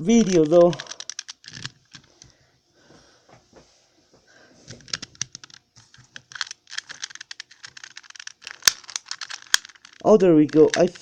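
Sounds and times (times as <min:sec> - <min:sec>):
puzzle cube clicking: 0:00.0 - 0:02.2, 0:04.8 - 0:11.0.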